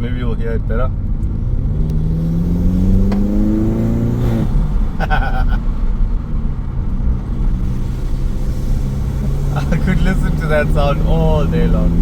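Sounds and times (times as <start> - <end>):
car engine accelerating hard: 0.5 - 12.0.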